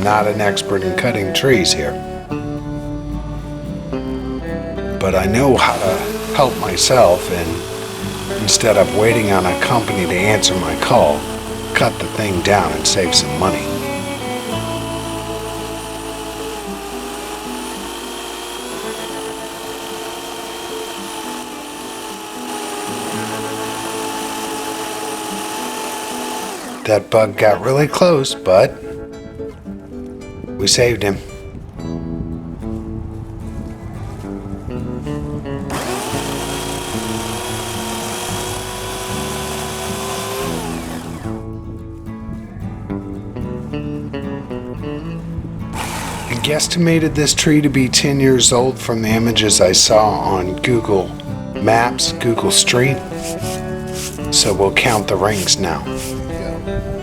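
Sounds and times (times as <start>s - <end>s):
background music: 0.0s - 57.0s
electric chainsaw motor whining: 5.0s - 29.4s, 35.1s - 41.5s, 45.7s - 57.0s.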